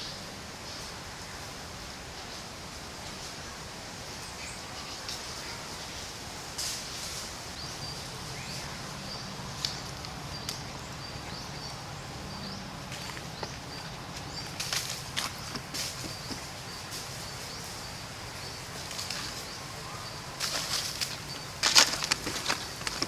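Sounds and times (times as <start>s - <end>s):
steady outdoor hiss: 0.0s - 23.0s
sharp clicks and rustles: 20.4s - 23.0s.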